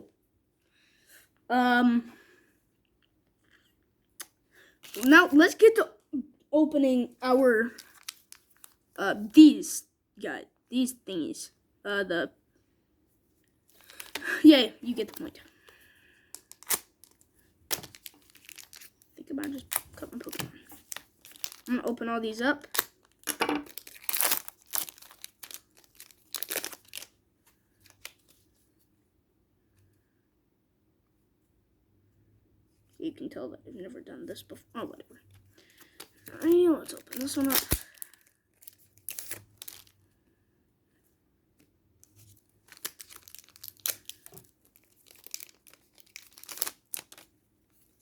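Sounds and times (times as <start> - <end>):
plastic wrapper crinkling and tearing: 4.2 - 5.7, 7.3 - 8.9, 13.7 - 28.4, 35.6 - 40.1, 42.0 - 48.0.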